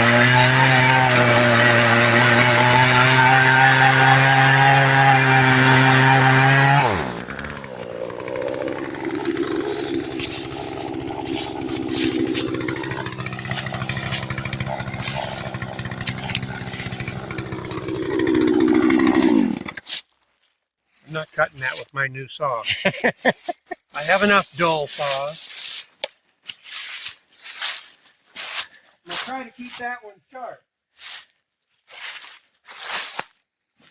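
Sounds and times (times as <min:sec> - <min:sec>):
chainsaw idling: 0:00.0 - 0:19.8
chainsaw cutting log: 0:00.0 - 0:20.0.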